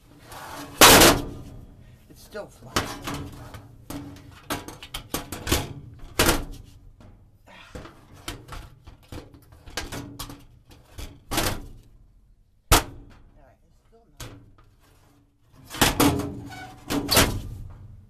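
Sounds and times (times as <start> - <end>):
filter banging and rattling in furnace: 15.5 - 17.9.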